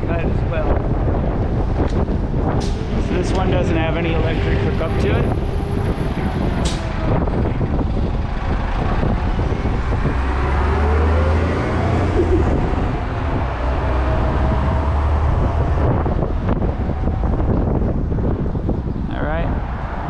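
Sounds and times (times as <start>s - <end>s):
low engine rumble: 0.0s - 20.0s
cars rushing past: 0.7s - 20.0s.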